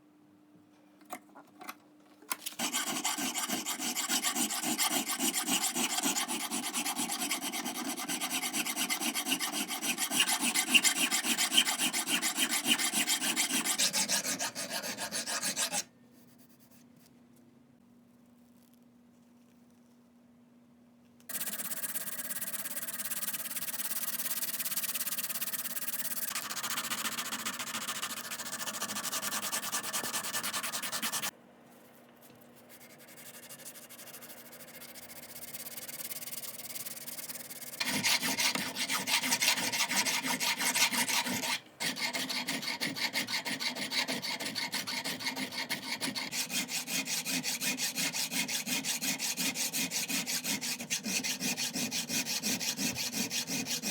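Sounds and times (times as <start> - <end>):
abrasive scrubbing on metal: 2.6 - 15.8, 22.3 - 31.3.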